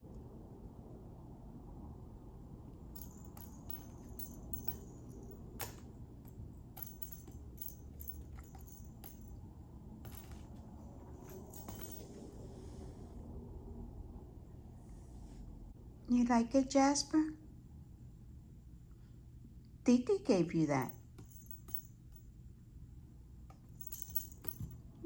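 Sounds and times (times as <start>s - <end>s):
cat toy jingling and clicking: 3.0s - 9.3s, 10.1s - 10.5s, 11.2s - 12.1s, 20.8s - 21.9s, 23.7s - 24.8s.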